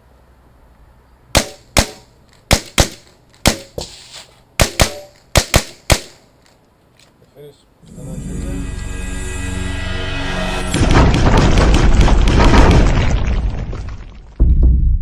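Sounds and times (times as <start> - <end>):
rifle shots: 1.4 - 3.7.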